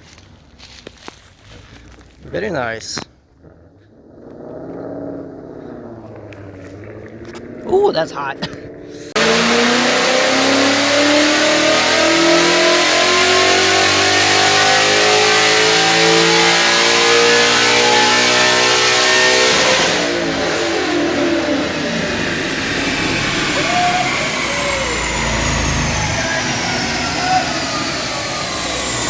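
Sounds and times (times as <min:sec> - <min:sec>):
car engine accelerating hard: 0:03.5 - 0:29.0.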